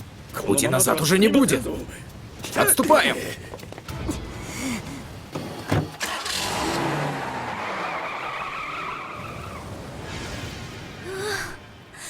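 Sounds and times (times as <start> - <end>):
car speeding away: 6.0 - 10.8.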